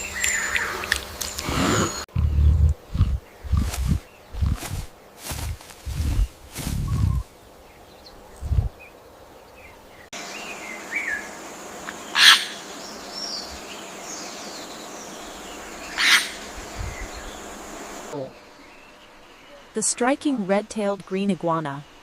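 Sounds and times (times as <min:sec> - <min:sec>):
small birds chirping: 0:00.0 - 0:20.0
steady hiss: 0:10.2 - 0:19.4.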